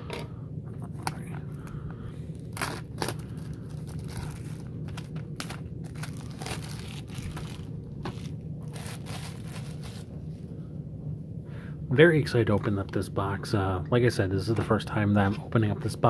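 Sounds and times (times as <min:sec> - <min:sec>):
steady low hum: 0:00.0 - 0:16.0
plastic wrapping crinkling and tearing: 0:02.3 - 0:10.1.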